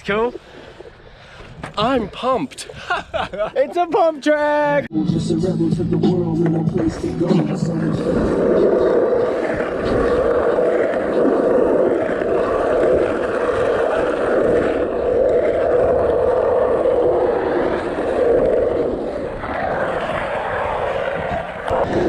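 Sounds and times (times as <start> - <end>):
skateboard wheels rolling: 5.3 - 22.0.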